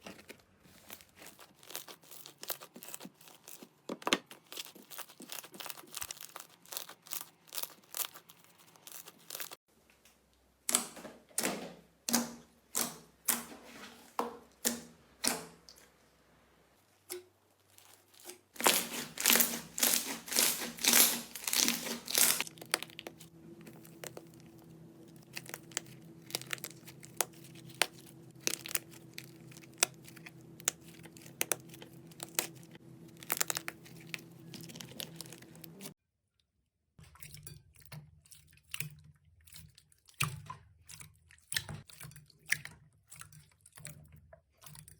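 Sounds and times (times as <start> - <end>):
slime crackling and popping: 0.7 - 9.6, 17.7 - 36.0.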